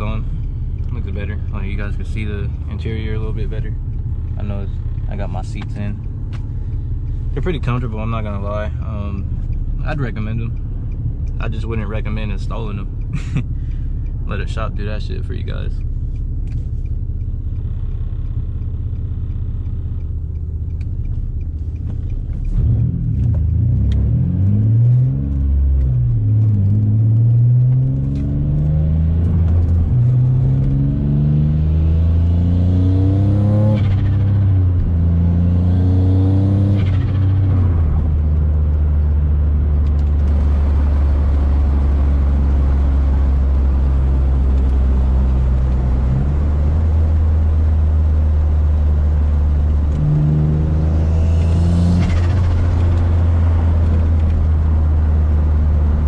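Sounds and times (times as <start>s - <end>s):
car engine accelerating through gears: 0.0s - 56.0s.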